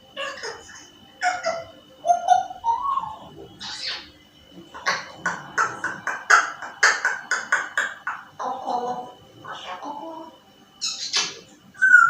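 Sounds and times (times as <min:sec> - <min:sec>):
parrot gliding whistle: 0:00.2 - 0:04.1, 0:09.4 - 0:12.0
parrot clicking calls: 0:04.7 - 0:08.6.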